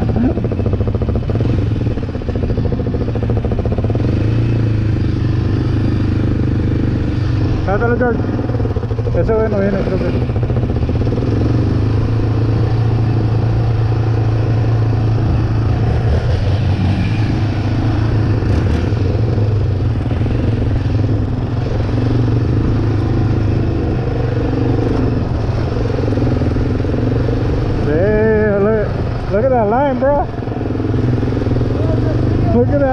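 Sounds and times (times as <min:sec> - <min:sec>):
vehicle engine droning: 0:00.0 - 0:32.9.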